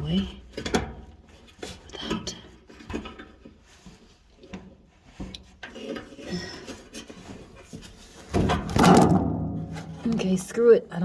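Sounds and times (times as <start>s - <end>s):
clatter of parts: 5.6s - 10.2s.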